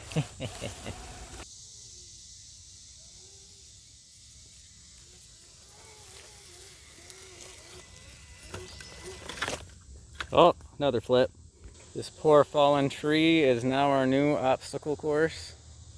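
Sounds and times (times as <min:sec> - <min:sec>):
electric motor and gears whining: 0:00.0 - 0:01.5, 0:02.2 - 0:10.4
steady hiss: 0:00.0 - 0:15.9.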